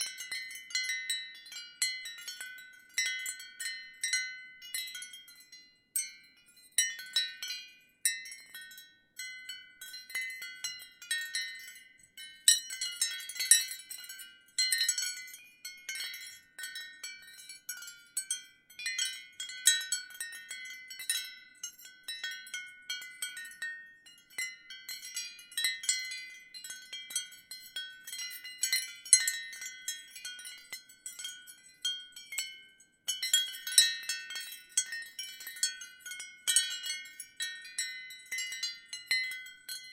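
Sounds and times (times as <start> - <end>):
ceramic wind chimes tinkling: 0.0 - 39.9.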